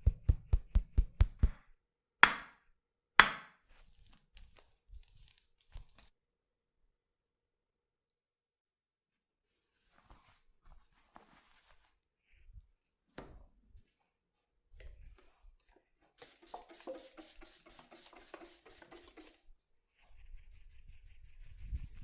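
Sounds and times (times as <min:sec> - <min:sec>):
percussive massage taps: 0:00.0 - 0:01.6
soft rubbing and handling: 0:03.7 - 0:06.2, 0:09.2 - 0:22.0.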